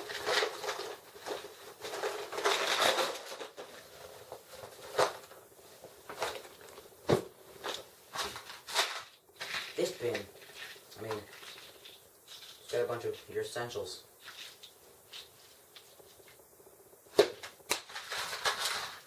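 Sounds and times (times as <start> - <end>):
tackle bin rustling and clattering: 17.8 - 19.0.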